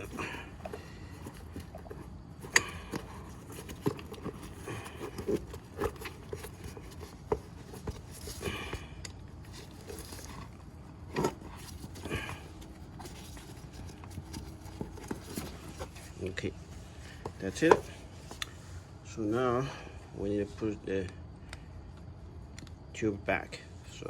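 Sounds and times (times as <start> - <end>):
rubber rubbing scrapes: 0.0 - 18.4.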